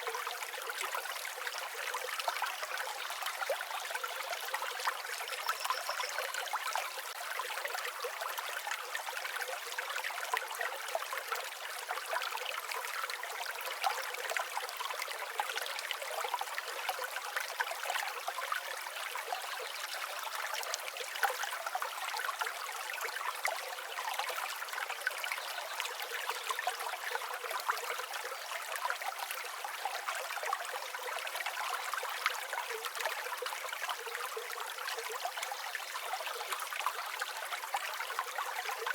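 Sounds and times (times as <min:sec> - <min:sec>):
small stream trickling: 0:00.0 - 0:38.9.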